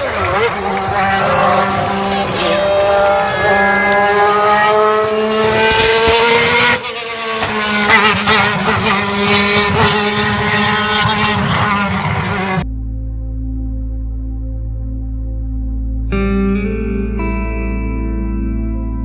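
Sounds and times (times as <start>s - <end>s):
racing car engine at high revs: 0.0s - 12.6s.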